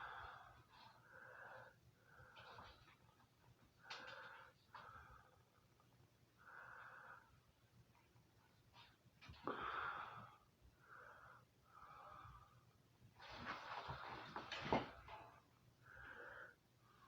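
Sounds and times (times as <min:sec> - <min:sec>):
person breathing: 0:00.0 - 0:02.9, 0:03.8 - 0:05.6, 0:06.4 - 0:07.6, 0:09.4 - 0:12.8, 0:15.8 - 0:17.0.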